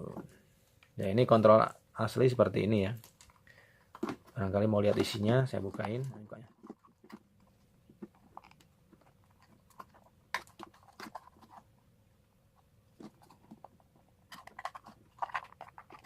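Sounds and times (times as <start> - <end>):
plastic clicks and knocks: 3.0 - 11.6.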